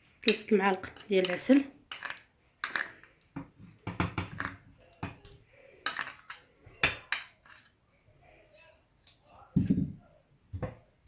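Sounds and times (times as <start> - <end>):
spoon scraping a cooking pot: 0.2 - 7.8.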